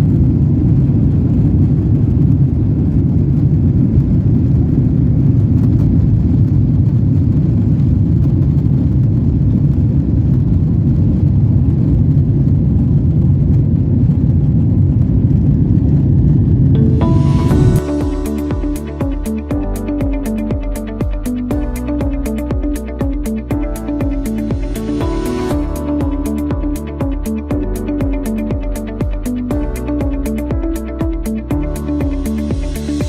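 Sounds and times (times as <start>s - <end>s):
airplane cabin engine rumble: 0.0s - 17.7s.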